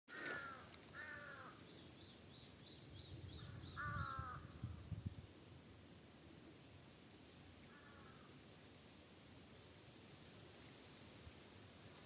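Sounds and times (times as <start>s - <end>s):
crow cawing: 0.1s - 1.6s, 3.8s - 4.4s, 7.7s - 8.3s
small birds chirping: 0.3s - 5.7s.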